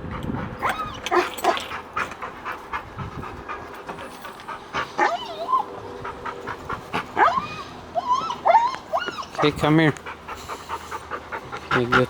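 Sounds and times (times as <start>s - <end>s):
dog panting: 0.0s - 12.0s
dog whining: 0.6s - 2.2s, 4.7s - 11.1s.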